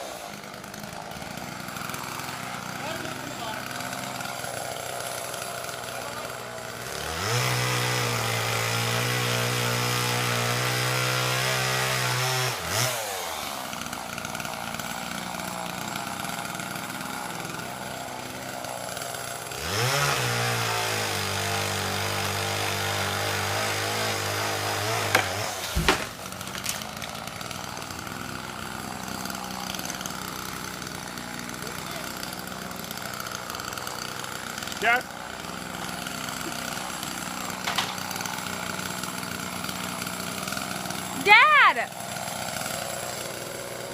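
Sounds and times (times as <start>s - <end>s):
chainsaw cutting: 0.0s - 43.9s
sharp knocks: 25.0s - 26.8s.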